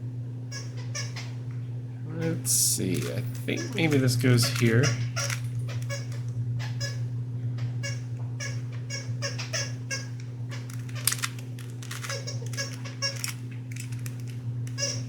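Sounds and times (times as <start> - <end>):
low hum: 0.0 - 15.0
puzzle cube clicking: 10.6 - 14.8.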